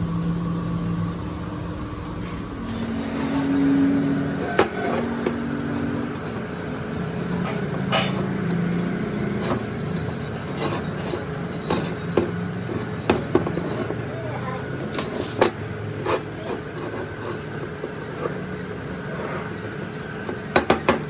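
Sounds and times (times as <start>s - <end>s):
low hum shifting in pitch: 0.0s - 12.9s.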